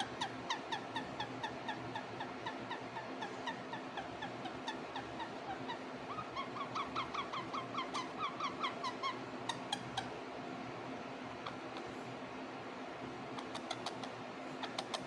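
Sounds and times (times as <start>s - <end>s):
parrot chirping: 0.0s - 10.2s, 13.3s - 15.0s.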